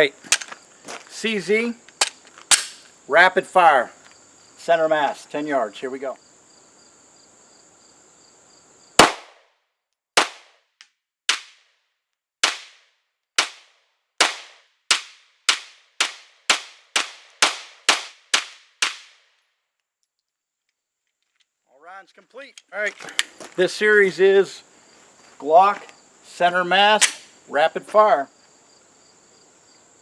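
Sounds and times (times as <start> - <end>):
pistol shots: 9.0 - 9.4, 10.2 - 10.5, 27.0 - 27.3.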